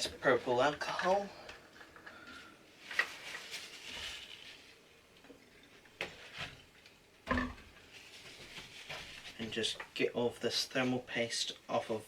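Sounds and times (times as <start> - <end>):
rustle: 2.8 - 4.8, 7.7 - 9.7.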